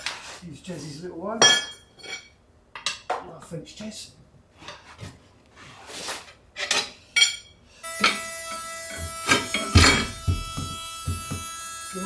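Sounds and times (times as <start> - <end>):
metallic knocks: 9.1 - 11.6.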